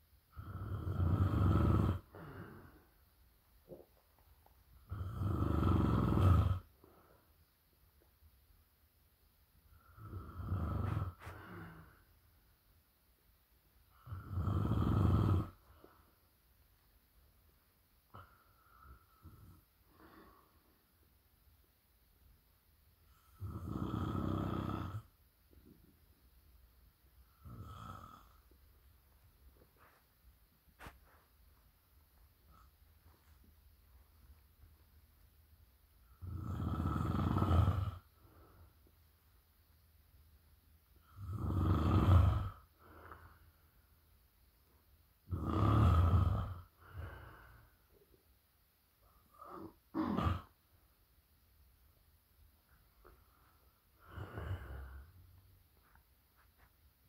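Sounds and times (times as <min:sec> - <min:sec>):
loud snoring: 0:00.3 - 0:02.6, 0:04.8 - 0:06.7, 0:09.8 - 0:11.8, 0:14.0 - 0:15.7, 0:23.2 - 0:25.1, 0:27.4 - 0:28.5, 0:36.2 - 0:38.1, 0:41.0 - 0:42.7, 0:45.2 - 0:47.6, 0:49.3 - 0:50.6, 0:54.0 - 0:55.2.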